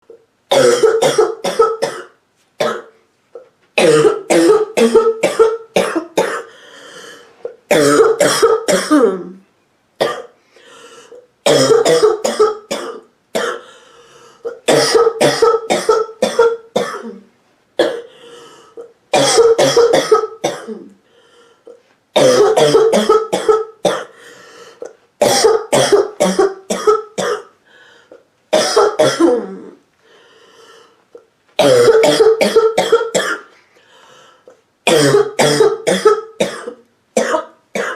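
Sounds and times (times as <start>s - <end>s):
woman coughing: 0.5s - 2.9s, 3.8s - 6.5s, 7.7s - 9.4s, 11.5s - 13.7s, 14.4s - 18.1s, 19.1s - 20.9s, 22.2s - 24.1s, 24.8s - 27.5s, 28.6s - 29.8s, 31.6s - 33.5s, 34.9s - 37.9s.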